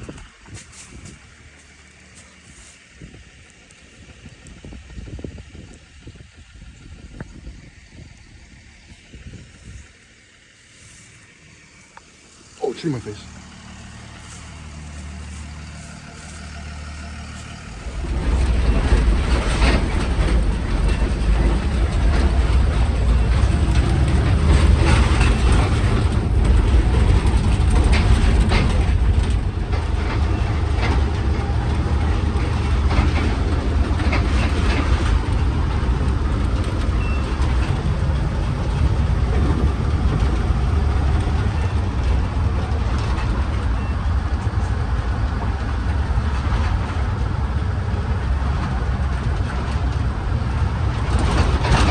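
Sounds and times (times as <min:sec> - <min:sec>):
vehicle engine and road rumble: 0:00.0 - 0:51.9
knocks and rattles: 0:13.9 - 0:51.9.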